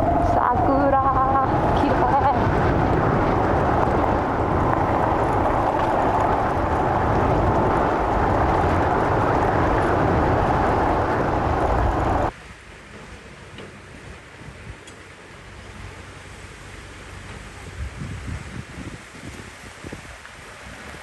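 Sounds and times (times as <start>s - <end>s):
motorcycle engine noise: 0.0s - 12.3s
wind rush: 0.0s - 12.3s, 17.7s - 21.0s.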